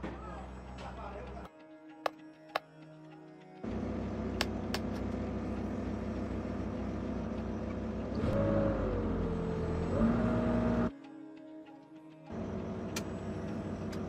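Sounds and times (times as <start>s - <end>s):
engine revving: 3.6s - 10.9s, 12.3s - 14.0s.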